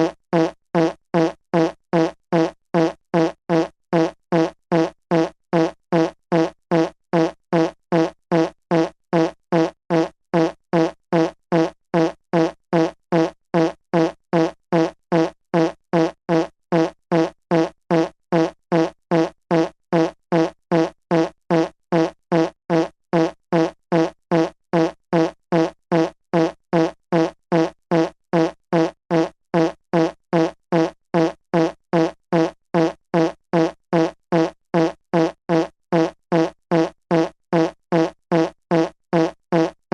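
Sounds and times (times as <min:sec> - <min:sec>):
fart sound effect: 0:00.0 - 0:39.9.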